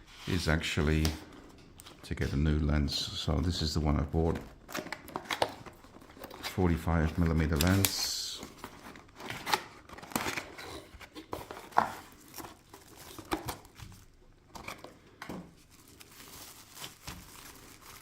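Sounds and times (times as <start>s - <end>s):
packaging crinkling and rustling: 3.9s - 18.0s.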